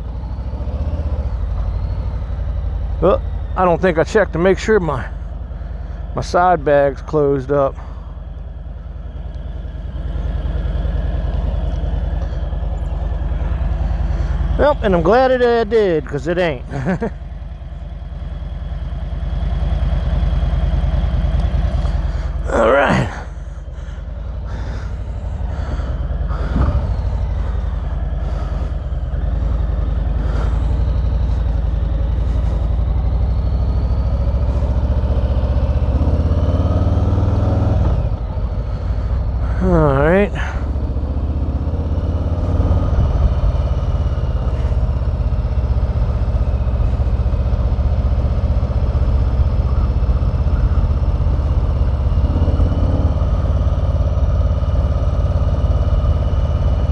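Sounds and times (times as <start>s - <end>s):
motorcycle engine running: 0.0s - 56.9s.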